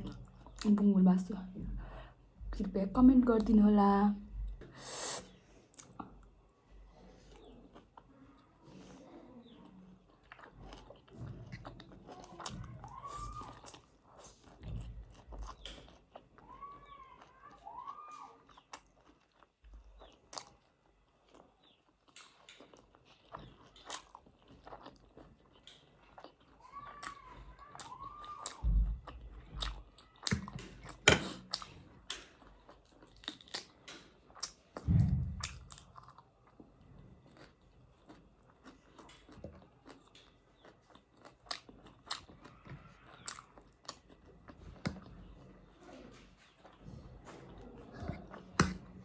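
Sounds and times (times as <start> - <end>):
person chewing noodles: 0.0 - 0.7, 4.5 - 34.8, 35.4 - 49.0
heavy low thumps: 34.9 - 35.8.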